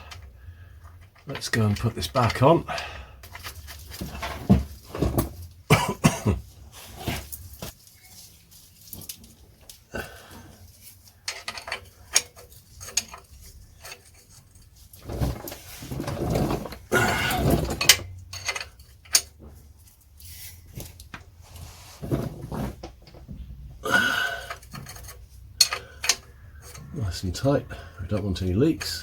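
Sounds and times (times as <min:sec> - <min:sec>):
rustling: 0:03.2 - 0:05.7, 0:06.4 - 0:23.6
metal clinks of spanner: 0:17.7 - 0:19.3, 0:24.4 - 0:27.0, 0:28.0 - 0:29.0.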